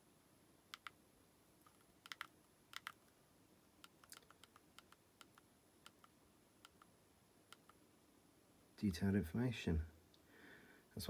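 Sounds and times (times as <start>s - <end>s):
small buttons clicking: 1.7s - 3.0s.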